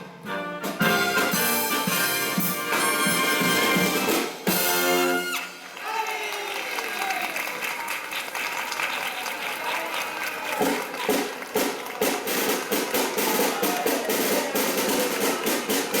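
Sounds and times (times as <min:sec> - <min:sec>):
live brass band: 0:00.0 - 0:05.8
crowd noise: 0:00.0 - 0:16.0
drum beat: 0:00.6 - 0:05.3, 0:10.6 - 0:16.0.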